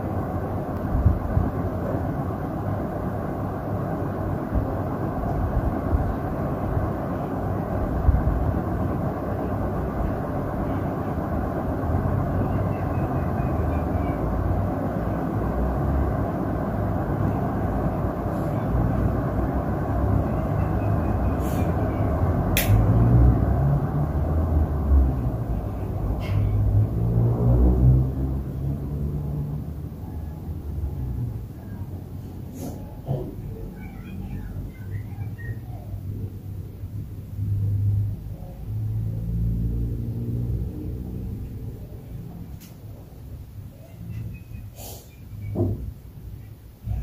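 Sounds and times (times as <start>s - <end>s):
ceiling fan air rushing: 0.0s - 47.0s
sharp click: 22.6s - 22.8s.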